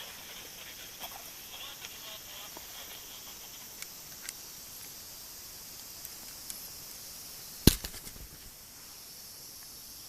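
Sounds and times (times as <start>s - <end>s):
steady high hiss: 0.0s - 10.0s
sharp crack or knock: 7.6s - 8.5s.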